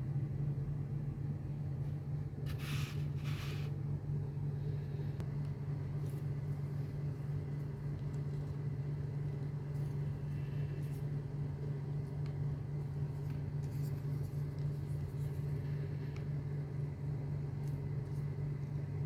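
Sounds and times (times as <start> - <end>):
steady low hum: 0.0 - 19.0
scratchy rustles: 2.4 - 3.8.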